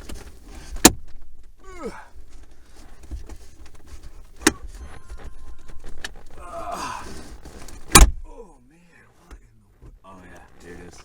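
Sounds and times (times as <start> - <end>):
plastic trim being pried: 2.2 - 8.2.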